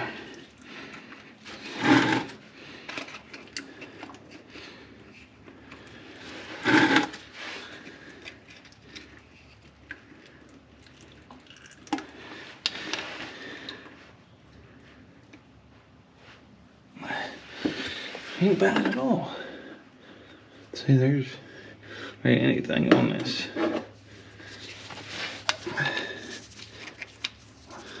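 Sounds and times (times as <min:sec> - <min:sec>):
small clicks and scrapes: 0:00.4 - 0:04.5, 0:05.1 - 0:13.8, 0:24.5 - 0:28.0.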